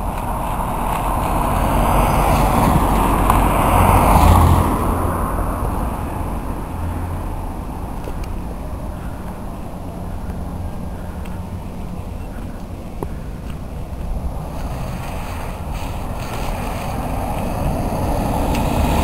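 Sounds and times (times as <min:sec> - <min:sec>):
car driving through floodwater: 0:00.1 - 0:07.7, 0:14.1 - 0:19.0.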